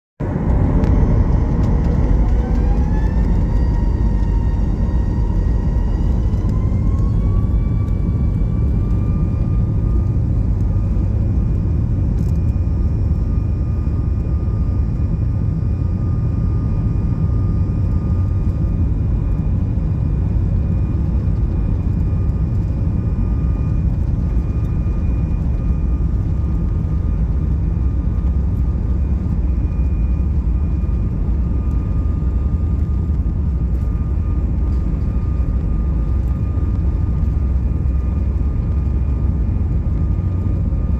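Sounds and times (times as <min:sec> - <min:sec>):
jet engines spooling up: 0:00.2 - 0:11.5.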